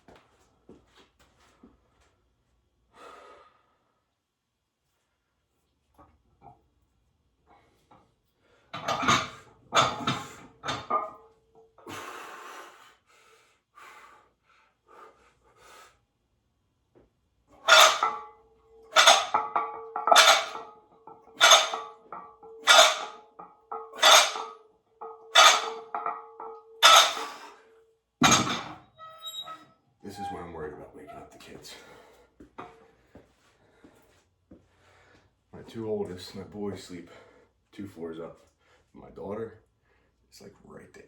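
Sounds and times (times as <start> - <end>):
metallic ring: 8.8 - 11.2, 17.7 - 27.5, 28.2 - 30.5
weight plates clanking: 8.8 - 11.2, 17.6 - 27.5, 28.2 - 30.5.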